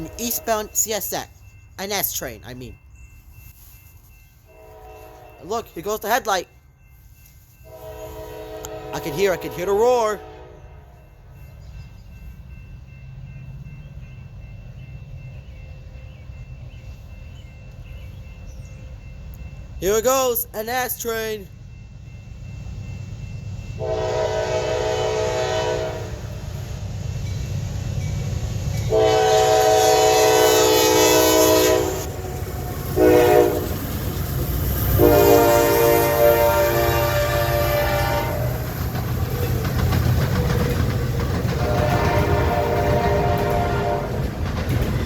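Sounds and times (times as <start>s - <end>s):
diesel locomotive rumble: 0.0s - 3.5s, 4.4s - 45.0s
locomotive air horn blasts: 4.5s - 5.4s, 7.6s - 11.0s, 23.8s - 26.4s, 28.9s - 32.3s, 33.0s - 33.8s, 35.0s - 38.6s, 41.6s - 44.2s.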